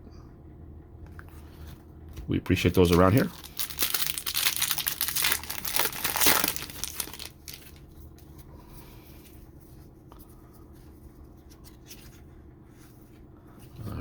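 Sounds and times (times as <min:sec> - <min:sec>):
card pack wrapper tearing: 0:02.5 - 0:07.8.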